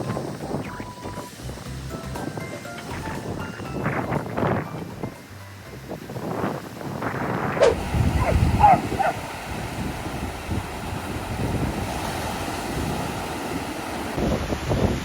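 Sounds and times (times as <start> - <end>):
wind buffeting microphone: 2.2 - 15.0
ocean surf: 6.7 - 15.0
dog whining: 7.6 - 9.2.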